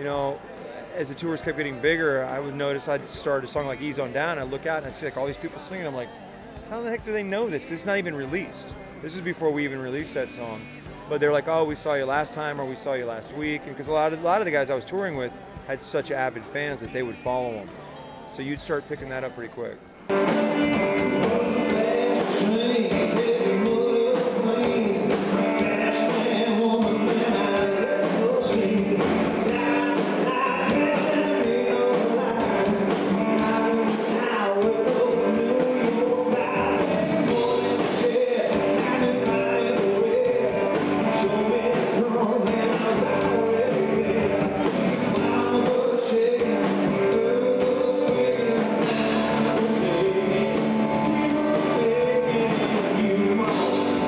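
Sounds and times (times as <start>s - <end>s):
country rock band playing: 0.0s - 54.0s
person singing: 20.1s - 54.0s.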